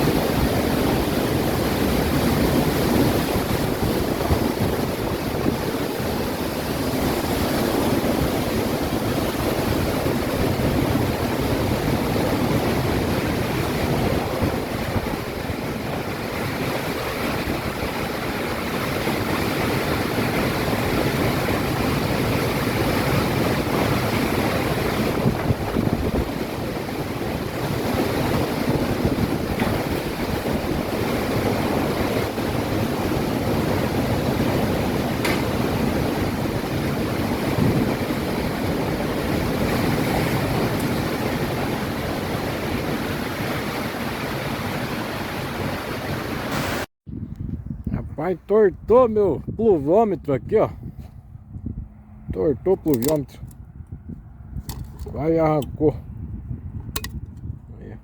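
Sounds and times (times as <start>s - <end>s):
wind and heavy rain rushing: 0.0s - 46.9s
wind gusts buffeting microphone: 0.0s - 58.0s.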